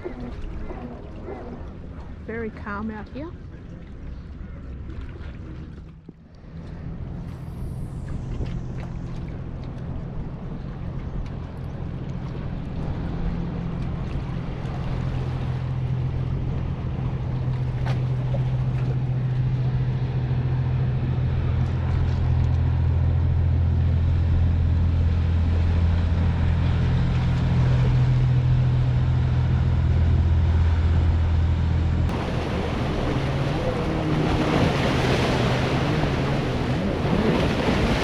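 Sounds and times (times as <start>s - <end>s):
lapping water: 0.0s - 20.0s, 32.1s - 38.0s
motorboat engine droning: 0.0s - 38.0s
wind: 0.0s - 38.0s.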